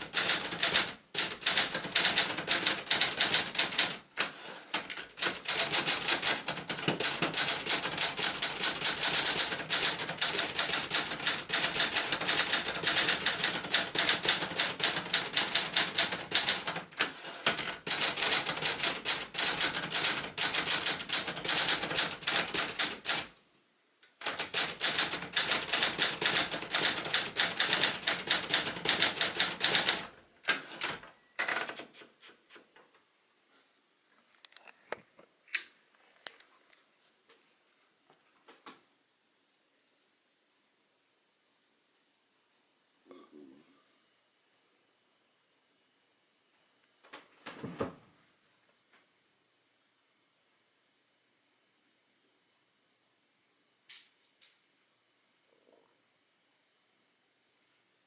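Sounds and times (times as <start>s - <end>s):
typewriter keystroke clacks: 0.0s - 23.3s, 24.1s - 31.9s.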